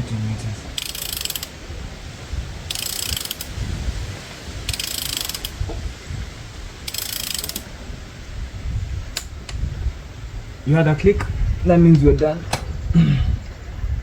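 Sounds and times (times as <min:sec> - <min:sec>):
torque wrench ratchet clicking: 0:00.8 - 0:01.6, 0:02.7 - 0:03.6, 0:04.7 - 0:05.6, 0:06.8 - 0:07.7.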